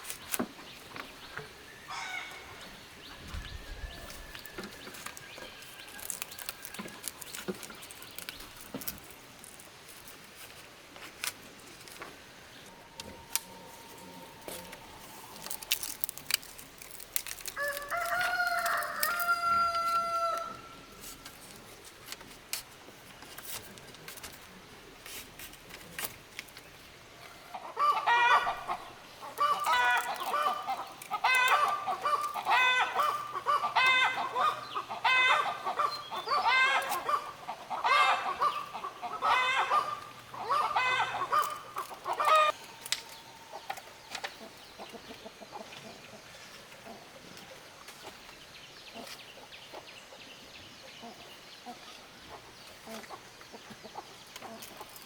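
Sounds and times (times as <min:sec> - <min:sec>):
chickens calling: 0:00.8 - 0:08.9, 0:27.2 - 0:48.2.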